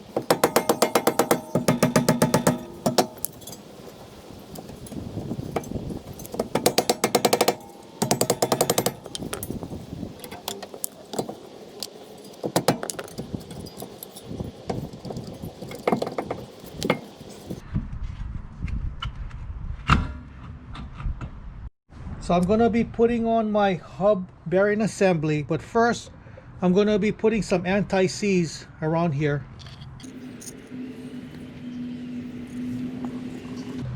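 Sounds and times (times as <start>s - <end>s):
sharp loud metal knock: 0.0s - 3.6s, 5.6s - 10.6s
air ratchet clicking: 0.0s - 17.6s
tools and metal parts clinking: 0.0s - 17.6s, 29.6s - 31.4s.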